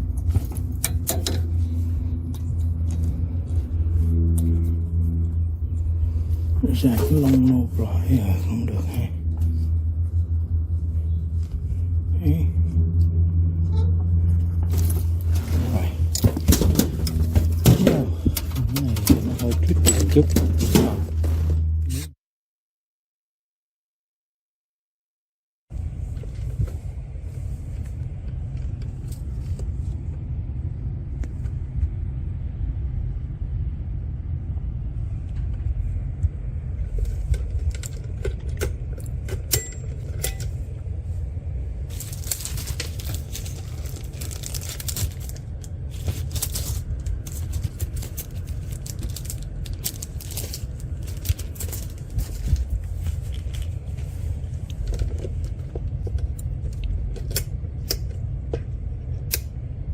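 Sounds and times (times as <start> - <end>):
steady low hum: 0.0 - 22.2, 25.7 - 59.9
rustling scrape: 14.1 - 18.2, 19.2 - 22.1, 41.9 - 55.4.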